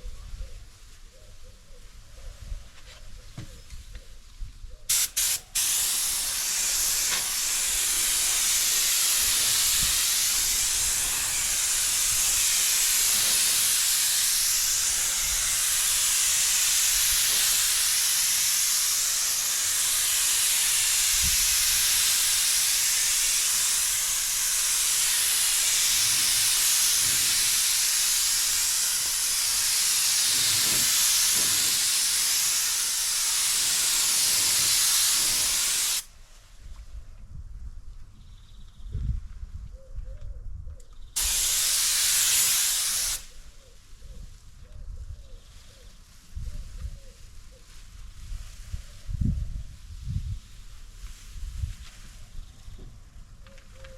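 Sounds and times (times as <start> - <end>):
spray gun hissing: 4.9 - 36.1, 41.2 - 43.4.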